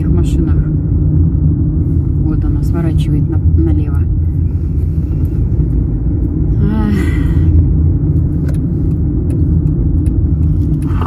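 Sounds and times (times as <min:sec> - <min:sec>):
car road and engine rumble: 0:00.0 - 0:11.0.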